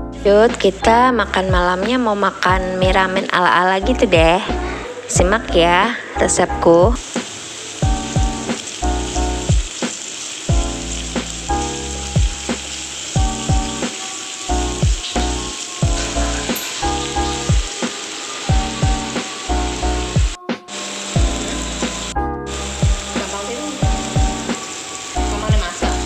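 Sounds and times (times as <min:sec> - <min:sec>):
food frying sizzle: 0:01.4 - 0:26.0
background music with beat: 0:06.8 - 0:26.0.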